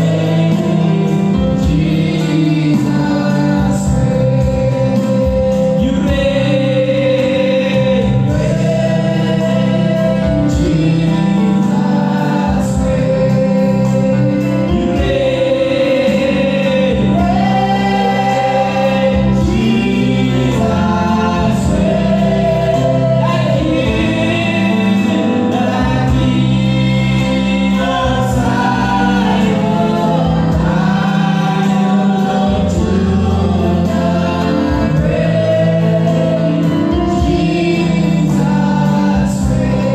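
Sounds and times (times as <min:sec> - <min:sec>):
choir singing gospel song: 0:00.0 - 0:39.9
instrumental backing: 0:00.0 - 0:39.9.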